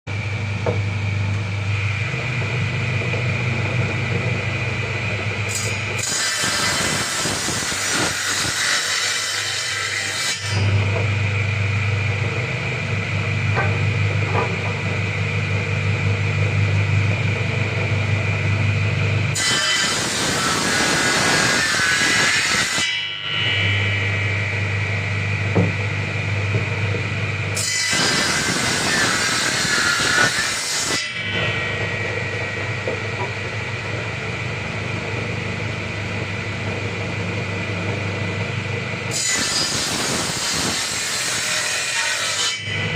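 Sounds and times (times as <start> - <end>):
power saw cutting wood: 1.8 - 11.4, 19.3 - 25.8, 27.4 - 34.4, 39.1 - 42.9
harsh hissy cutting noise: 5.5 - 10.8, 19.3 - 24.1, 27.6 - 33.2, 39.1 - 42.6.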